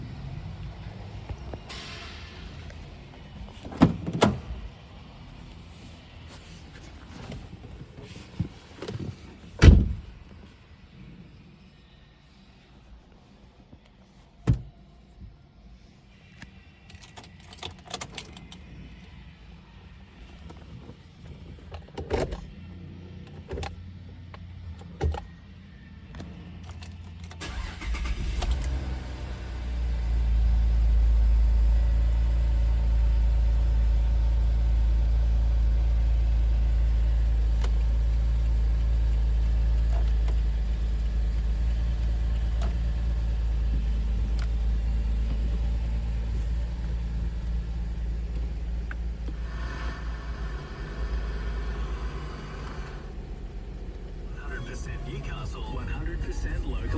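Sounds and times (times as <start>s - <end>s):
car engine idling: 0.3s - 10.6s, 27.1s - 56.9s.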